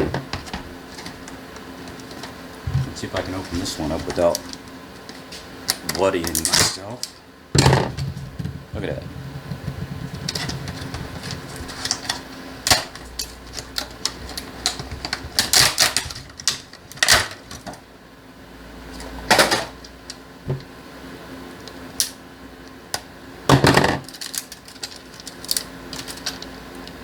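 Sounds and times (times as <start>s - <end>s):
plastic packaging crinkling: 24.0s - 26.6s.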